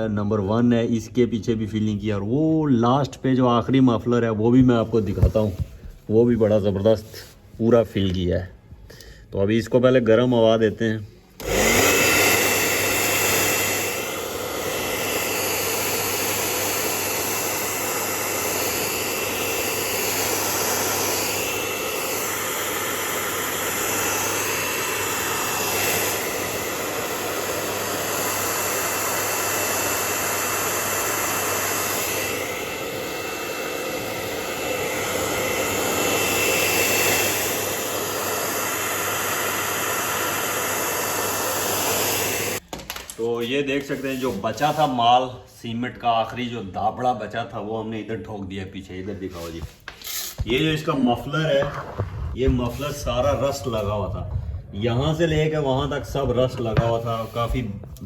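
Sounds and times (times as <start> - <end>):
hair dryer running: 11.4 - 42.6, 49.6 - 58.0.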